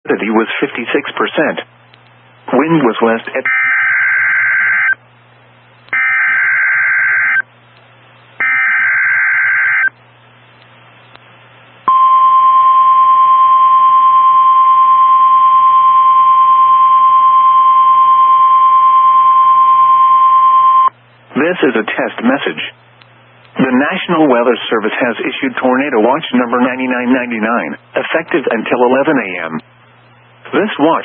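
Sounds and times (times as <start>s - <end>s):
faint radio hiss: 0.1s - 3.5s, 20.9s - 31.0s
steady warning alarm tone: 3.4s - 5.0s, 5.9s - 7.5s, 8.4s - 9.9s, 11.9s - 20.9s.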